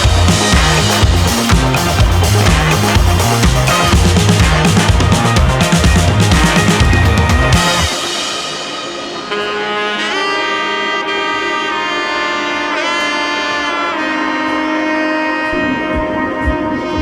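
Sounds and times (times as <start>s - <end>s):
drum-heavy music: 0.0s - 14.7s
melody of long bending notes: 0.0s - 17.0s.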